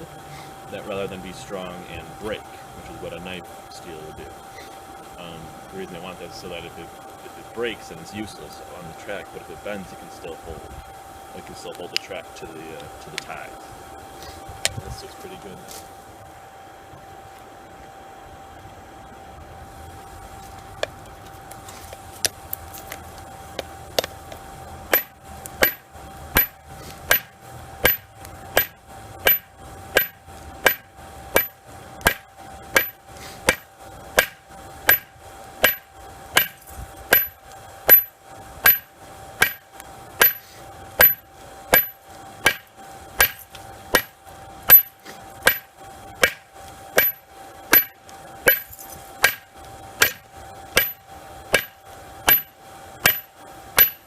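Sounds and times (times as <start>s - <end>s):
faint steady tone: 0.0s - 22.5s, 23.1s - 54.0s
hammer striking metal on anvil: 24.9s - 25.8s, 26.4s - 32.2s, 32.8s - 40.4s, 41.0s - 44.1s, 44.7s - 46.4s, 47.0s - 54.0s.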